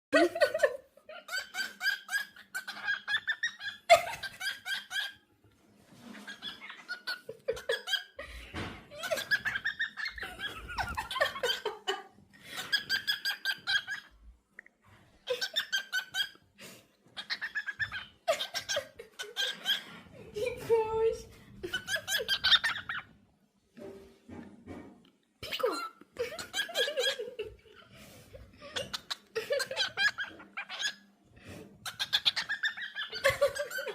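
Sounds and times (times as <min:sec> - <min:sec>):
cockatiel chirping: 0:01.2 - 0:05.2, 0:06.2 - 0:08.2, 0:09.0 - 0:11.6, 0:12.6 - 0:14.2, 0:15.3 - 0:16.4, 0:17.2 - 0:20.0, 0:21.6 - 0:23.1, 0:28.7 - 0:31.1, 0:31.8 - 0:33.9.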